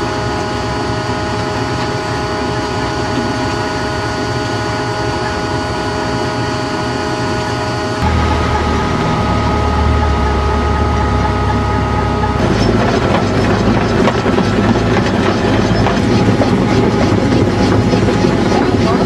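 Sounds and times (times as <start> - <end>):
rough rumble with rattling: 8.0 - 19.0
steady tones: 8.0 - 19.0
truck engine hum: 8.0 - 19.0.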